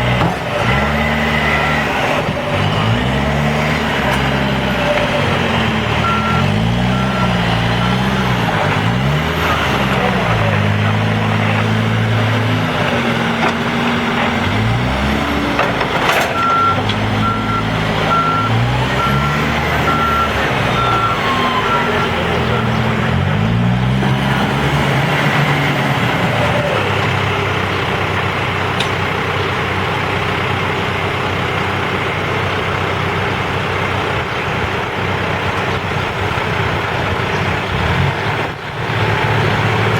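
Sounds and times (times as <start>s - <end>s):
diesel engine revving: 0.0s - 39.9s
back-up alarm beeping: 6.0s - 8.2s, 16.4s - 22.8s.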